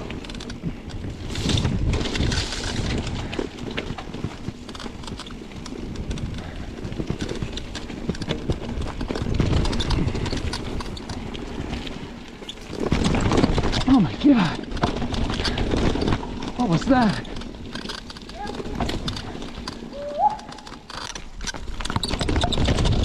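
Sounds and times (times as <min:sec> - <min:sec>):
bike clicks and rattles: 0:00.0 - 0:23.0
bike tyres on dirt and rocks: 0:00.0 - 0:23.0.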